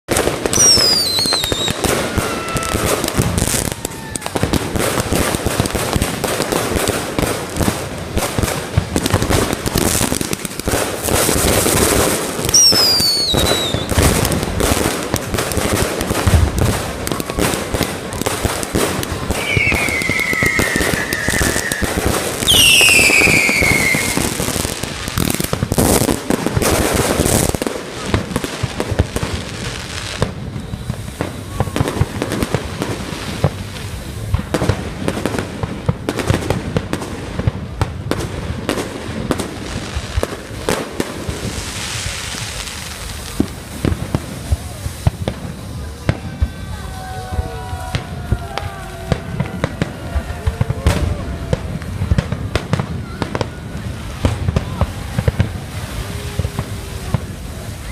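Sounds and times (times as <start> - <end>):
fireworks bangs and crackles: 0.0 - 57.9
falling firework whistles: 0.2 - 6.9, 9.0 - 27.7, 29.9 - 34.6.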